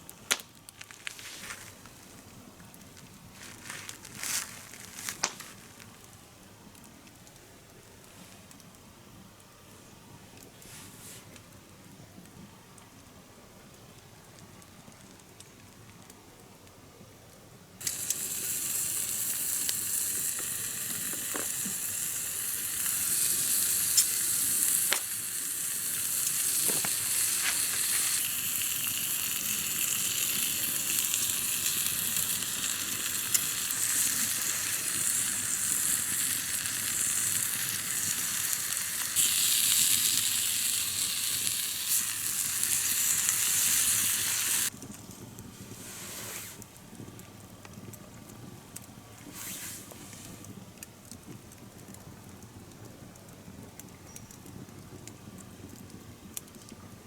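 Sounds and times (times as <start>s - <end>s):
oil pops and crackles: 0.0s - 6.2s, 17.8s - 45.5s, 50.4s - 56.8s
food sizzling in a frying pan: 17.8s - 44.7s.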